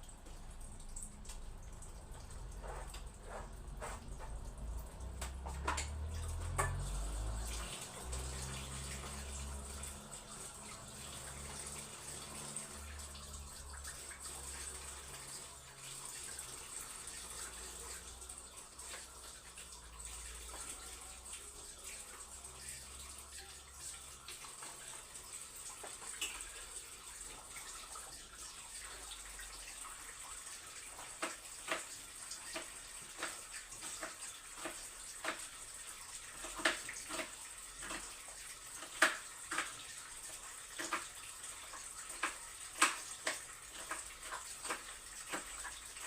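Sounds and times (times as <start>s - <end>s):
tap running into a sink: 0.0s - 46.0s.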